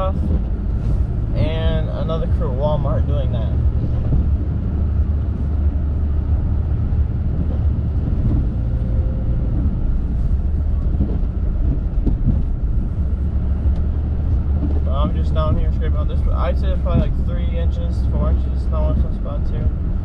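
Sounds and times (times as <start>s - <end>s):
road rumble: 0.0s - 20.0s
truck engine running: 0.0s - 20.0s.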